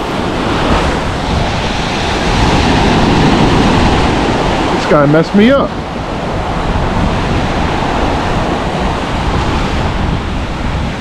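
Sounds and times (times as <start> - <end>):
ocean surf breaking: 0.0 - 11.0
wind buffeting microphone: 0.0 - 11.0.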